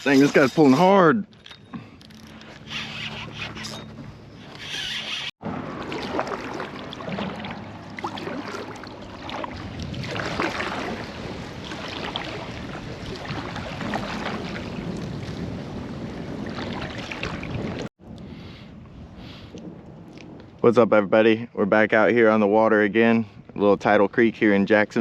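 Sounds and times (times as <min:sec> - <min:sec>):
wind rumbling on microphone: 0:00.0 - 0:25.0
water splashing against a kayak: 0:04.4 - 0:17.9.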